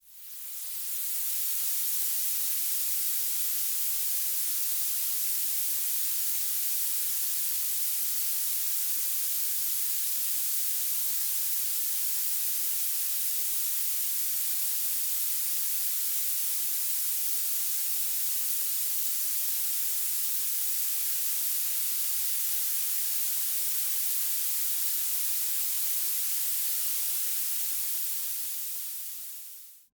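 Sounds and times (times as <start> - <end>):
thin bright hiss: 0.0 - 3.2, 15.0 - 29.9.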